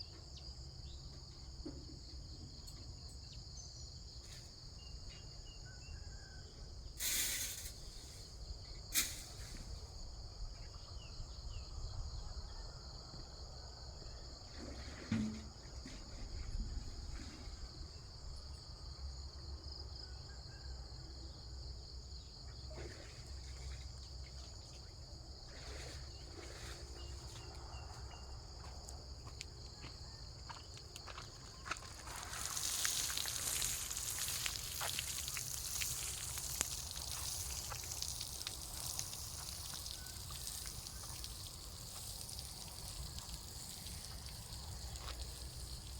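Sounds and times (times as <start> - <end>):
crickets and insects droning: 0.0 - 45.9
water spraying hiss: 7.0 - 8.3, 8.9 - 9.8, 31.8 - 45.9.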